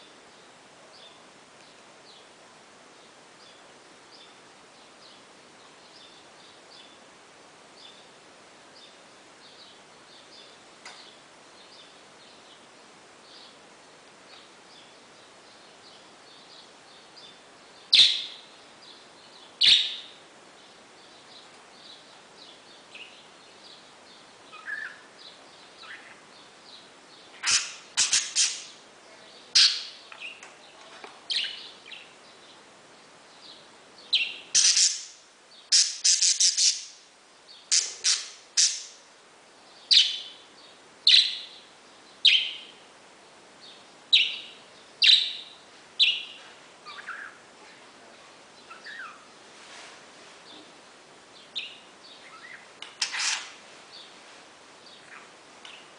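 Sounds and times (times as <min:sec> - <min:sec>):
parakeet twittering: 0:19.6 - 0:20.1, 0:27.3 - 0:28.8, 0:29.5 - 0:30.0, 0:34.1 - 0:37.0, 0:37.7 - 0:39.0, 0:48.7 - 0:49.2
parakeet sharp chirps: 0:27.4 - 0:28.8, 0:29.6 - 0:30.0, 0:34.1 - 0:37.0, 0:37.7 - 0:39.0.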